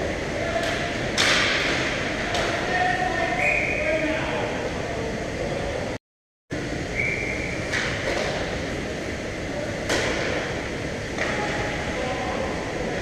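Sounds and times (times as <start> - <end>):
hockey sticks and puck knocking: 0.6 - 2.6.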